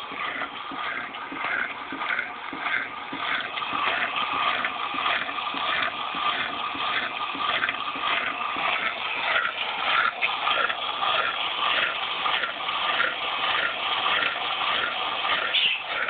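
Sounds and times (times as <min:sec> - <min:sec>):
washing machine rhythmic whooshing: 0:00.0 - 0:16.0.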